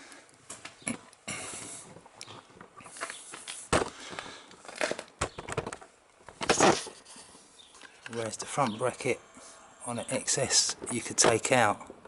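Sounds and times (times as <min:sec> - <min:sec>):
rustling handling noises: 0:01.6 - 0:08.8
handling knocks and clicks: 0:01.9 - 0:06.9, 0:10.7 - 0:12.0.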